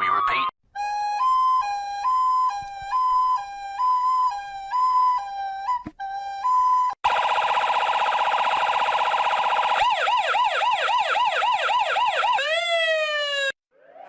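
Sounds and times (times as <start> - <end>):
electronic siren: 6.5 - 14.0.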